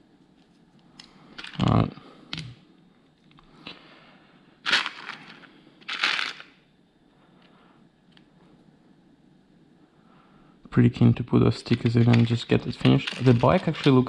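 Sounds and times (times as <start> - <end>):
plastic rustling and rattling: 4.7 - 6.5, 11.9 - 14.0.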